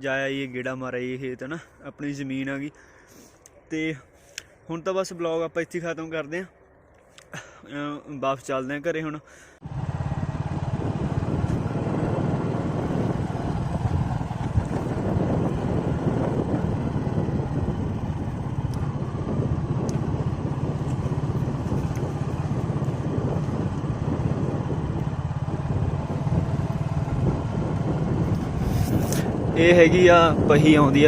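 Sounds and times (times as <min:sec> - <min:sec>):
road noise: 0:00.0 - 0:31.0
motorcycle engine running: 0:09.6 - 0:31.0.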